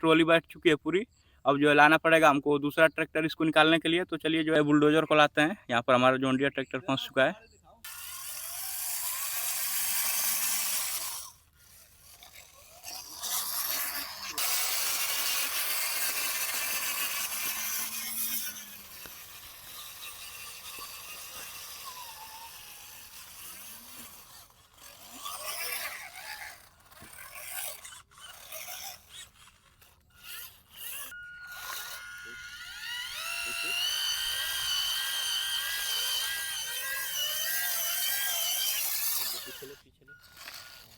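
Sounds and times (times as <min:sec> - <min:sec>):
electric gear motors whirring: 0:07.8 - 0:40.9
scraping in mud: 0:10.7 - 0:22.0.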